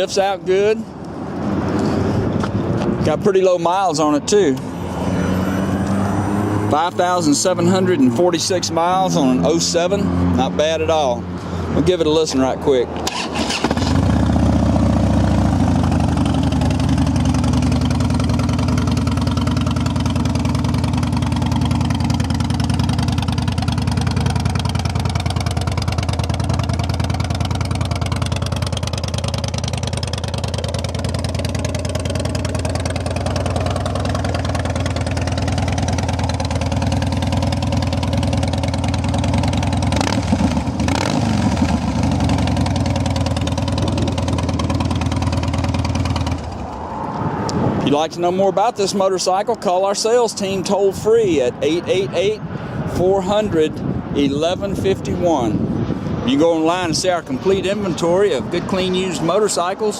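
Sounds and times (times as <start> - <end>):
motorcycle engine idling: 13.1 - 46.7.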